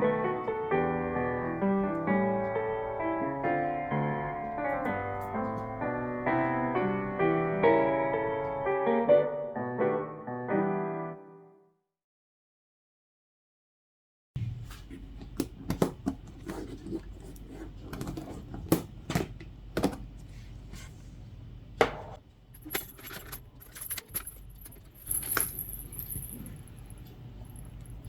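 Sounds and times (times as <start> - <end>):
low steady hum: 14.4 - 28.0
small hard objects clinking: 24.4 - 26.8.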